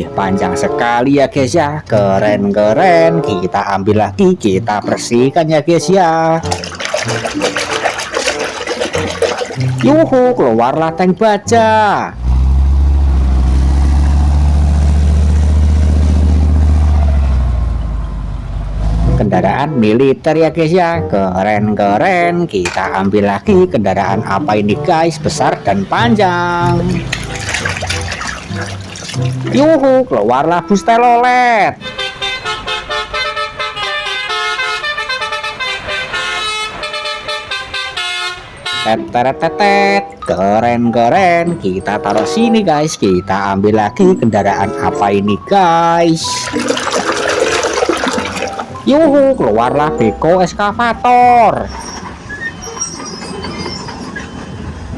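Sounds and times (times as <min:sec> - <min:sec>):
tank engine rumble: 0:12.1 - 0:19.2
bus horn playing a tune: 0:31.8 - 0:39.6.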